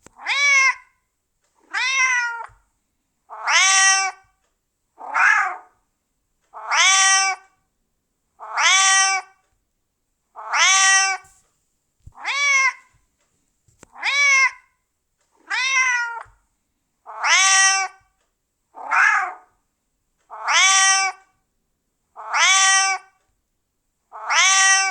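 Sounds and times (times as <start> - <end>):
cat meowing: 0.2 - 0.9, 1.7 - 2.6, 3.3 - 4.2, 5.0 - 5.7, 6.6 - 7.4, 8.4 - 9.3, 10.4 - 11.4, 12.2 - 12.9, 14.0 - 14.7, 15.4 - 16.4, 17.1 - 18.0, 18.8 - 19.5, 20.3 - 21.2, 22.2 - 23.1, 24.2 - 24.9.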